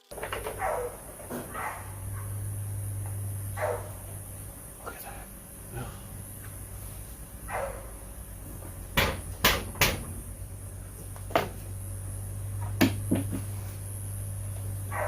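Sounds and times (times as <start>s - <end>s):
clicks and knocks of engine parts: 0.0s - 1.7s, 8.4s - 10.2s, 11.0s - 11.8s, 12.6s - 13.5s.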